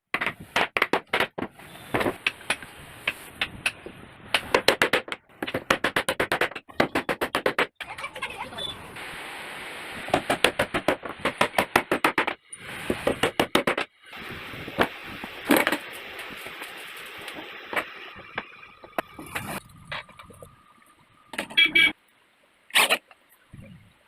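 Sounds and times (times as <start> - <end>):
steady hiss: 1.6 - 4.6, 8.2 - 11.8, 12.4 - 13.4, 14.0 - 21.4
rapid sharp knocks: 3.4 - 7.8, 10.1 - 14.0.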